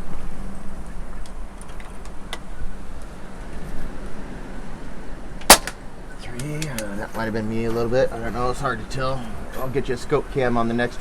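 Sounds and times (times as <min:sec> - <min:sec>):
air rifle shot: 0:05.4 - 0:05.9.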